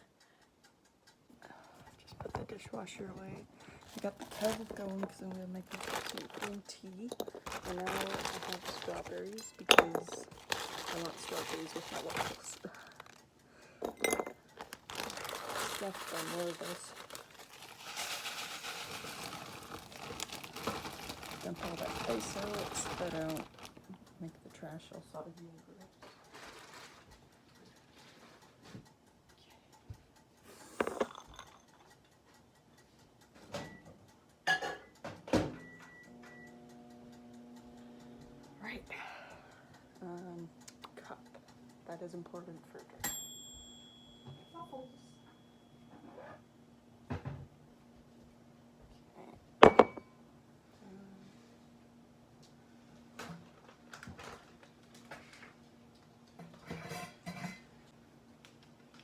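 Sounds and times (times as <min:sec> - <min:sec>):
faint steady hum: 0:00.0 - 0:32.0, 0:32.6 - 0:59.0
faint regular ticking: 0:00.0 - 0:35.0, 0:35.7 - 0:45.9
dishes and cutlery clattering: 0:13.8 - 0:14.4, 0:30.8 - 0:31.9, 0:34.5 - 0:35.0, 0:56.4 - 0:57.7
microwave oven humming: 0:33.1 - 0:59.0
dishes knocking when set down: 0:49.6 - 0:50.0.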